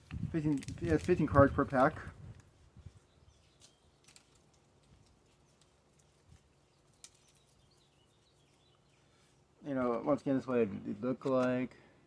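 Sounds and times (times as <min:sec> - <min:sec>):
cards being handled and flipped: 0:00.0 - 0:01.8, 0:03.5 - 0:07.6, 0:11.1 - 0:11.7.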